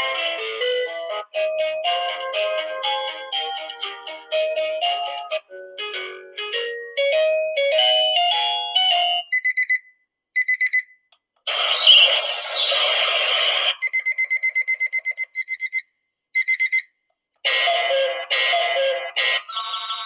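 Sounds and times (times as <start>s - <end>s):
alarm clock electronic melody: 0.0s - 9.8s, 13.8s - 15.8s, 16.4s - 16.9s, 17.5s - 20.0s
harsh noisy alarm tone: 11.5s - 15.3s, 17.5s - 20.0s
rapid high beeping: 11.5s - 15.8s.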